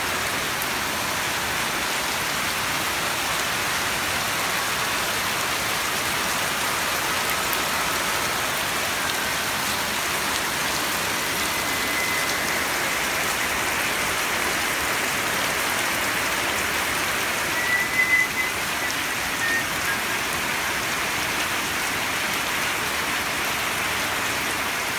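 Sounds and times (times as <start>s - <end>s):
steady rain falling: 0.0s - 24.9s
brief high tone: 7.6s - 13.6s.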